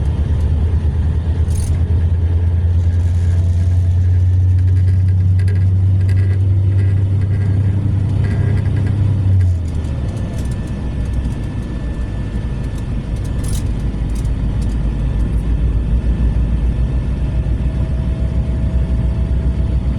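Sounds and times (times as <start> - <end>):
diesel engine droning: 0.0 - 19.9
faint clicks or rattles: 1.4 - 1.9, 9.6 - 15.4.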